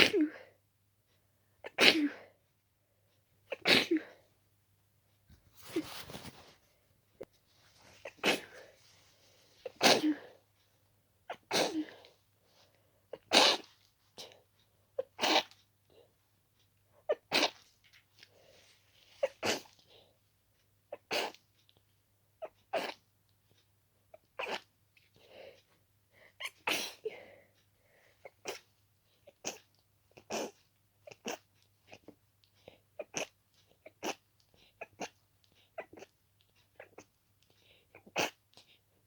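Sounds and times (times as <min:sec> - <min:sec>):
person sneezing: 0:01.7 - 0:02.2, 0:03.5 - 0:04.2, 0:08.0 - 0:08.7, 0:09.7 - 0:10.3, 0:11.4 - 0:12.0, 0:13.2 - 0:13.7.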